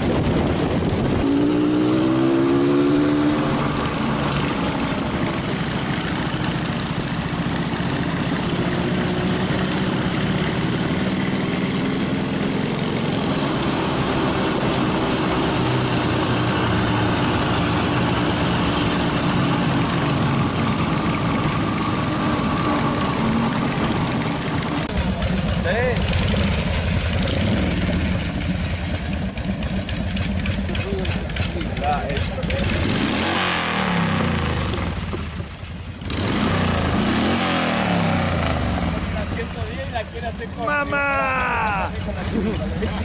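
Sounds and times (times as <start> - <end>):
motorcycle engine running: 0.0 - 43.0.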